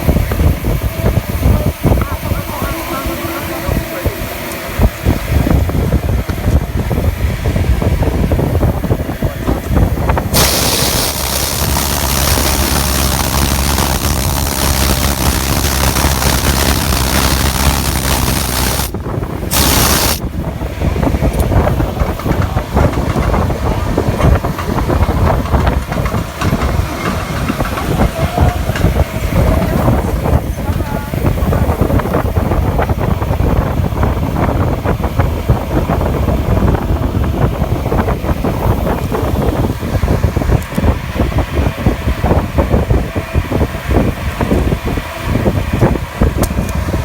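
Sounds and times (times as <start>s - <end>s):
rough crackling noise: 10.3s - 20.2s
welding arc sizzling: 10.3s - 20.2s
low steady hum: 10.3s - 20.3s.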